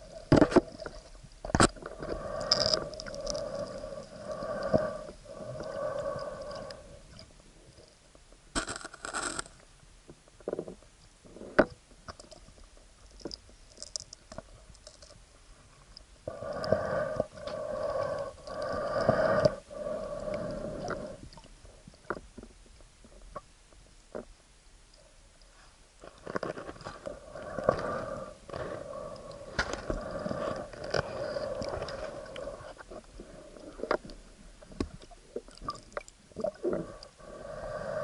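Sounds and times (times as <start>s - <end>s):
heavy breathing underwater: 1.9s - 7.2s, 16.3s - 21.4s, 26.8s - 34.1s, 36.6s - 38.0s.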